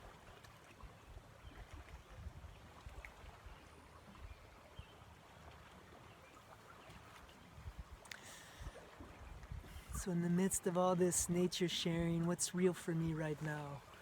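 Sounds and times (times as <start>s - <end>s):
faint ticks: 8.0s - 8.5s.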